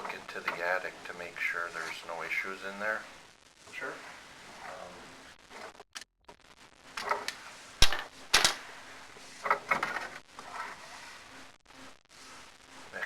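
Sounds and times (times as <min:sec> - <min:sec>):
sharp clicks and knocks: 0:07.0 - 0:08.6.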